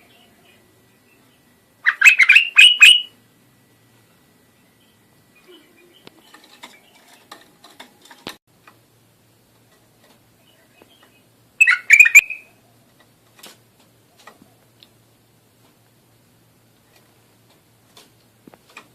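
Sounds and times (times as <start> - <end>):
bird singing whistled notes: 0.0 - 3.2, 10.4 - 12.6.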